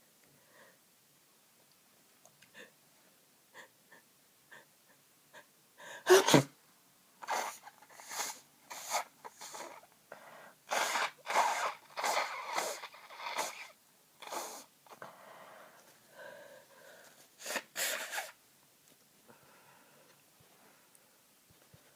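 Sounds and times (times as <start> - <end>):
person sneezing: 6.0 - 6.6
person sniffing blocked nose: 6.1 - 6.5, 7.2 - 9.9, 10.7 - 15.0, 17.4 - 18.4.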